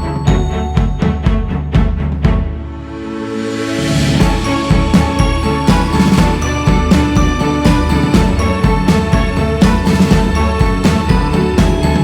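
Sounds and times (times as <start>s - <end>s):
background music held tones: 0.0s - 12.0s
low drum hits: 4.1s - 12.0s.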